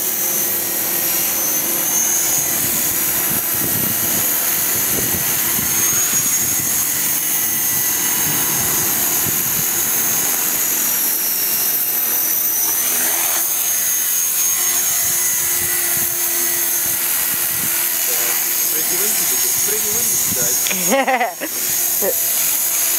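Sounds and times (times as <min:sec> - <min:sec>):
rc helicopter motor whine: 0:00.0 - 0:22.9
wind buffeting microphone: 0:02.4 - 0:10.9, 0:14.6 - 0:20.7.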